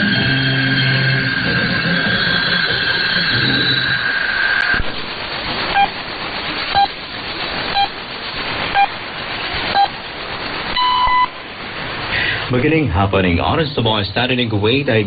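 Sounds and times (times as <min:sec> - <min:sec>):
time signal beeps: 0:00.0 - 0:04.8, 0:05.7 - 0:05.9, 0:06.7 - 0:07.0, 0:07.7 - 0:08.0, 0:08.7 - 0:08.9, 0:09.7 - 0:10.0, 0:10.7 - 0:11.4
shortwave hiss: 0:00.0 - 0:15.0.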